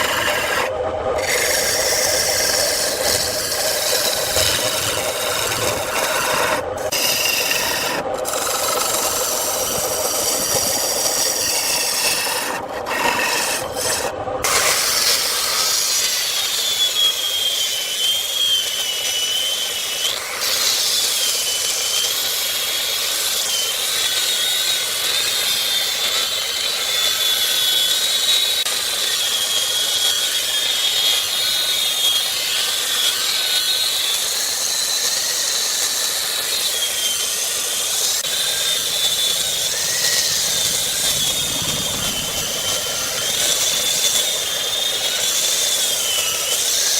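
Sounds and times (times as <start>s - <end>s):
high wavering whine: 0.0s - 20.2s
lathe tool scraping wood: 0.0s - 46.9s.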